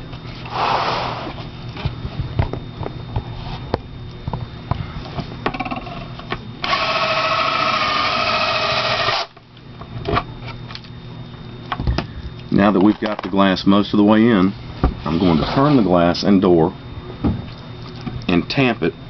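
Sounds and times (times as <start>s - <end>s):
cordless drill running: 6.6s - 9.3s.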